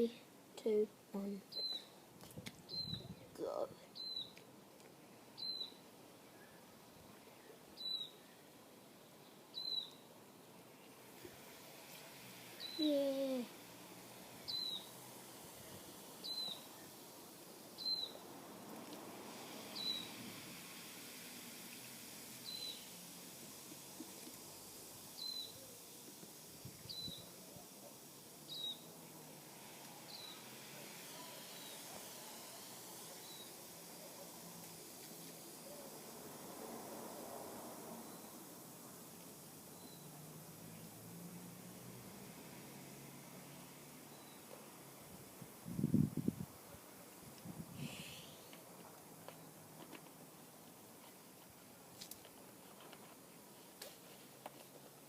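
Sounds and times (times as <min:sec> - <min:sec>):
faint steady hiss: 0:00.0 - 0:55.0
bird chirping: 0:01.5 - 0:02.0, 0:02.6 - 0:03.3, 0:03.9 - 0:04.4, 0:05.4 - 0:06.6, 0:07.4 - 0:08.5, 0:09.2 - 0:10.1, 0:12.6 - 0:13.4, 0:14.4 - 0:15.0, 0:16.2 - 0:17.0, 0:17.8 - 0:18.2, 0:19.7 - 0:20.2, 0:22.4 - 0:23.0, 0:25.2 - 0:25.8, 0:26.8 - 0:27.4, 0:28.4 - 0:29.0, 0:30.0 - 0:30.5, 0:33.0 - 0:33.6, 0:38.0 - 0:38.4, 0:39.7 - 0:40.2, 0:44.1 - 0:44.6.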